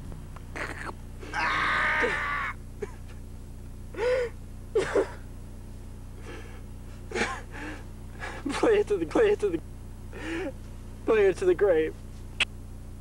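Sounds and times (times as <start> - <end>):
person gasping: 4.0 - 4.4, 10.2 - 10.6.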